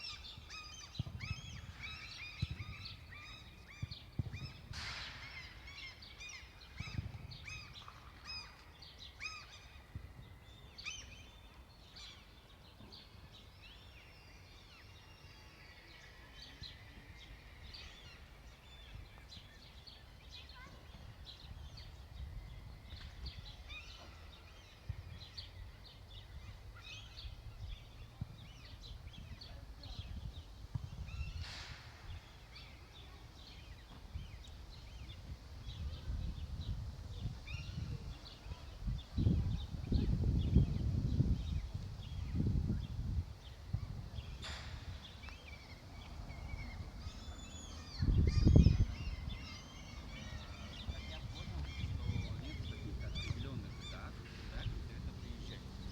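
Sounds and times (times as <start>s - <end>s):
wind buffeting microphone: 0.0s - 8.4s, 24.8s - 55.9s
small birds chirping: 0.0s - 55.9s.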